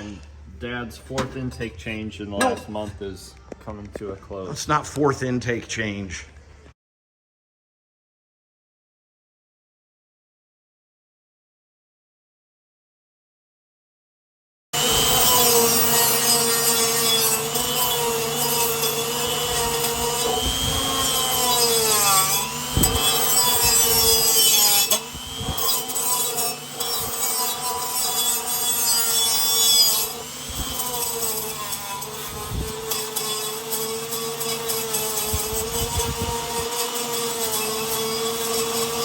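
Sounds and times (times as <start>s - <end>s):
gritty hissy cutting: 14.8s - 39.0s
power tool motor whining: 14.8s - 39.0s.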